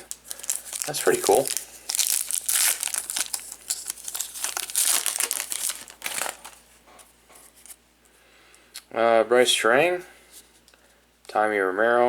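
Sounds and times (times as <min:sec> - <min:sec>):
packaging crinkling and rustling: 0:00.0 - 0:06.8.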